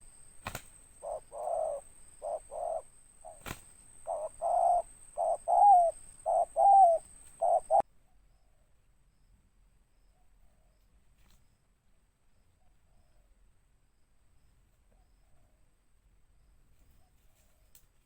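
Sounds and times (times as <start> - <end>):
dove cooing: 0.0 - 7.8.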